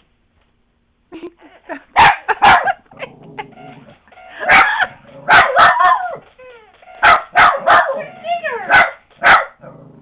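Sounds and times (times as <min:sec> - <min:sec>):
puppy barking: 0:02.0 - 0:02.8, 0:04.4 - 0:06.2, 0:07.0 - 0:09.7
dog whining: 0:03.0 - 0:08.7.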